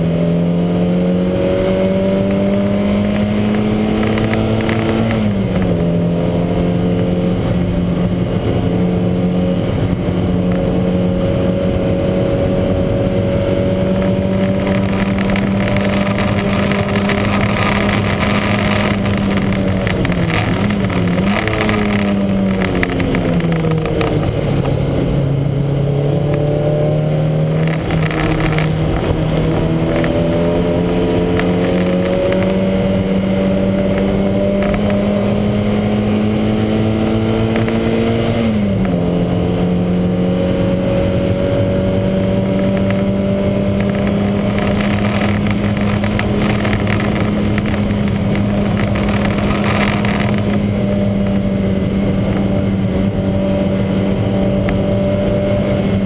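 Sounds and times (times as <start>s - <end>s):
race car engine running hard: 0.0s - 56.0s.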